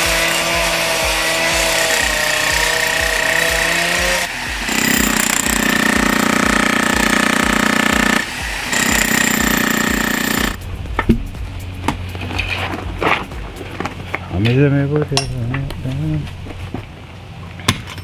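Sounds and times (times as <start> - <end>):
demolition hammer breaking concrete: 4.7 - 10.6.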